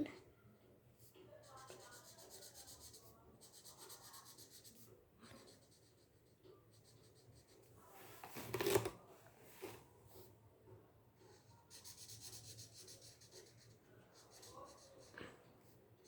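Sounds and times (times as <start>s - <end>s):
marker scratching on paper: 1.1s - 7.6s, 11.3s - 15.2s.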